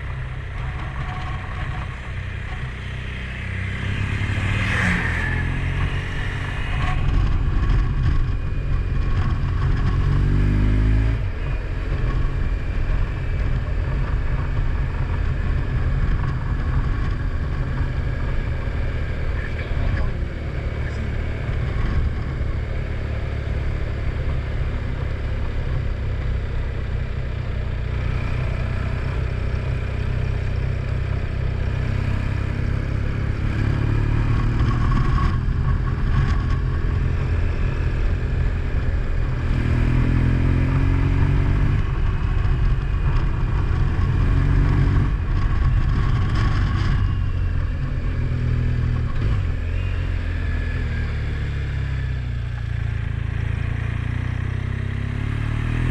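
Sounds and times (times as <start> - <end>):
vehicle engine rumbling: 0.0 - 55.9.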